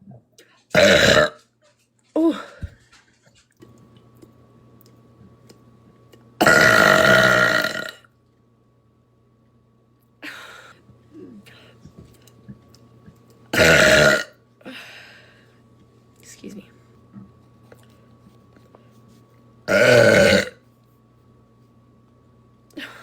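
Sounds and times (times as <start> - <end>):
woman burping: 0.8 - 1.4, 6.4 - 8.0, 13.5 - 14.3, 19.7 - 20.6.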